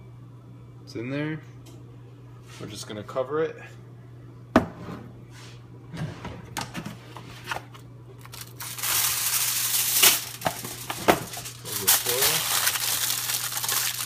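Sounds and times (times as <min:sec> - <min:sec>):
aluminium foil crinkling: 0:08.2 - 0:14.0.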